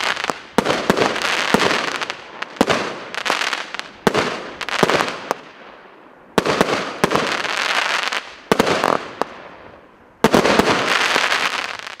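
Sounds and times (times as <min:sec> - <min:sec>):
firework bangs: 0:00.0 - 0:05.6, 0:06.4 - 0:12.0
firework crackling: 0:00.0 - 0:05.6, 0:06.4 - 0:12.0.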